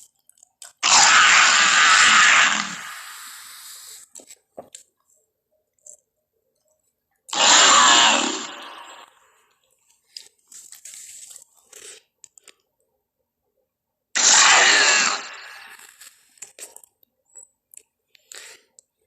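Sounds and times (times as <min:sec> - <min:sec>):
creature hissing call: 0:00.8 - 0:04.0, 0:07.3 - 0:09.1, 0:14.2 - 0:15.8.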